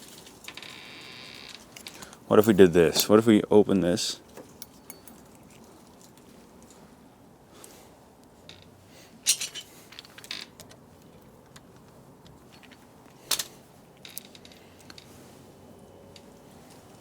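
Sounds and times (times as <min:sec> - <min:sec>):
lock parts clinking and clicking: 0:00.1 - 0:03.3, 0:04.3 - 0:06.8, 0:09.2 - 0:15.1.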